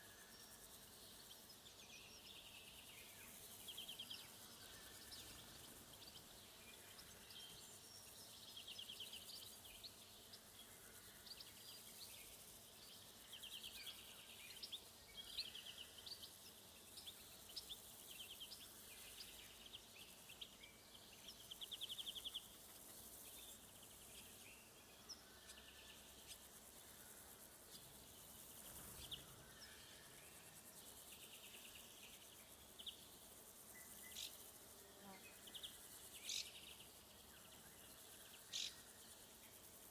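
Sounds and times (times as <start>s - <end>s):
high insect hiss: 0.0s - 39.9s
insects chirping buzzy trills: 0.0s - 39.9s
bird chirps: 35.3s - 37.0s.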